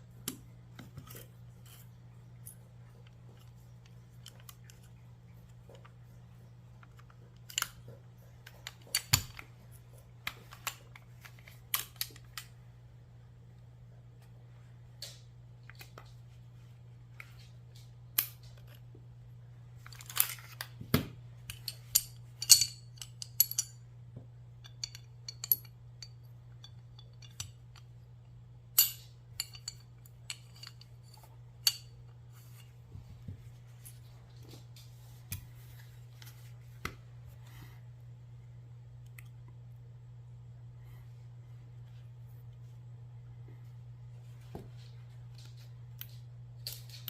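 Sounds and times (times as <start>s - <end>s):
metallic clicks of pistol parts: 6.8s - 9.5s, 10.3s - 12.5s, 21.5s - 23.8s, 24.6s - 27.9s, 28.8s - 31.9s.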